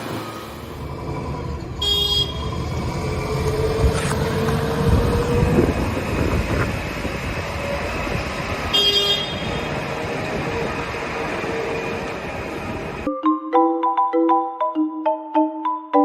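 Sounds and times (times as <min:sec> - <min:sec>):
heavy vehicle engine rumbling: 0:00.0 - 0:13.1.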